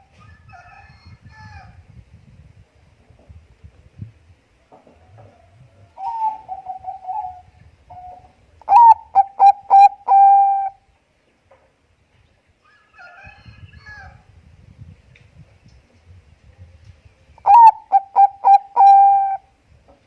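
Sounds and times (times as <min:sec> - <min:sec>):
dove trilling and cooing: 0:05.1 - 0:10.8, 0:17.4 - 0:19.5.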